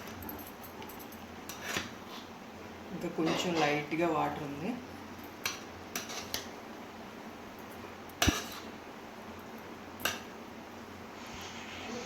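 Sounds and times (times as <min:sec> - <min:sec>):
steady hiss: 0:05.4 - 0:12.0.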